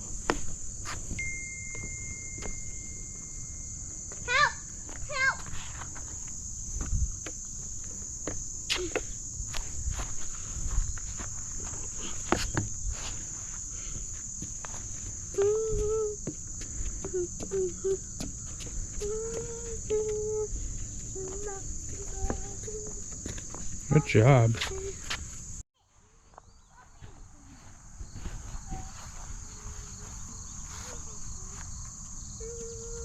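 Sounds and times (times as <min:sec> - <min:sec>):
footsteps and scuffs: 0:00.0 - 0:02.8, 0:04.0 - 0:25.6, 0:26.3 - 0:33.0
insects chorus: 0:00.0 - 0:33.0
child calling: 0:04.2 - 0:05.5, 0:15.4 - 0:16.3, 0:19.0 - 0:20.6, 0:21.2 - 0:23.0, 0:32.4 - 0:33.0.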